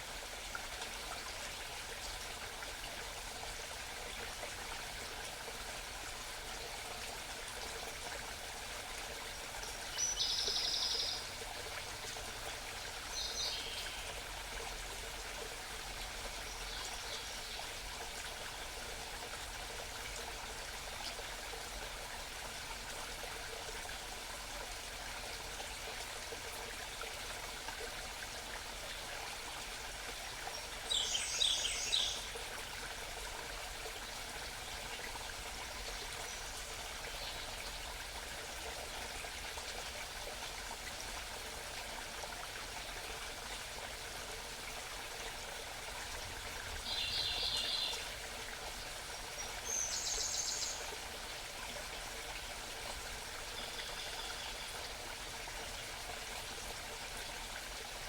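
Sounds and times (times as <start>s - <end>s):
stream babbling: 0.0s - 58.0s.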